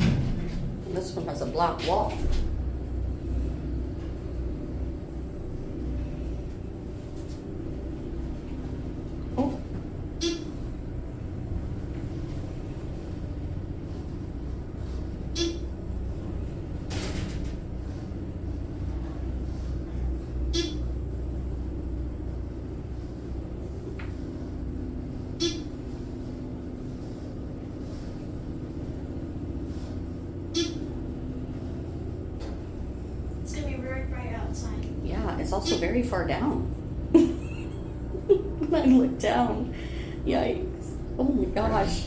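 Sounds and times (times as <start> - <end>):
elevator rumble: 0.0 - 42.0
steady hum: 0.0 - 42.0
click and tone: 10.2 - 10.6, 15.4 - 15.7, 20.5 - 20.8, 25.4 - 25.8, 30.6 - 30.9.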